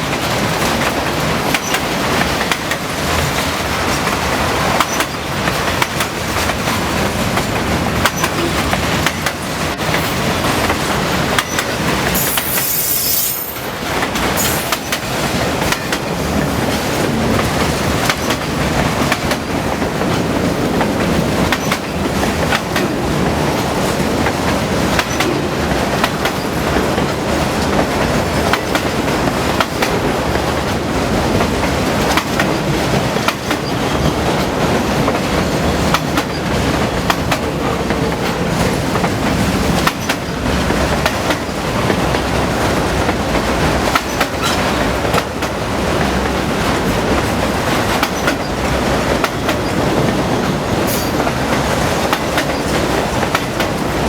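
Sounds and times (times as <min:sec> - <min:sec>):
train wheels clattering over rails: 0:00.0 - 0:54.0
high squeal: 0:12.2 - 0:13.7.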